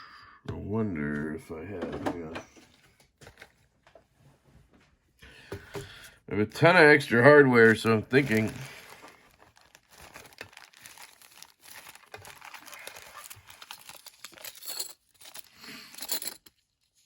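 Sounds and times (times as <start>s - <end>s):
plastic packets crinkling: 3.2s - 3.6s, 7.1s - 17.0s
small screws clicking and rattling: 13.5s - 16.6s.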